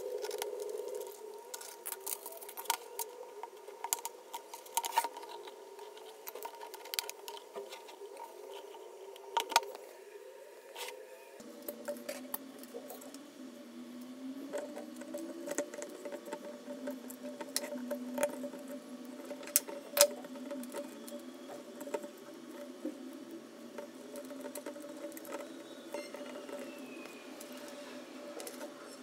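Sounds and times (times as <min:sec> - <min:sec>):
small parts clicking: 0:14.0 - 0:28.8.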